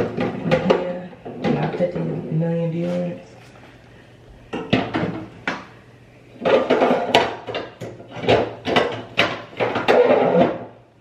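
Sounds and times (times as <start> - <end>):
plastic containers knocking and rattling: 0.0 - 2.3, 4.5 - 5.7, 6.4 - 10.7.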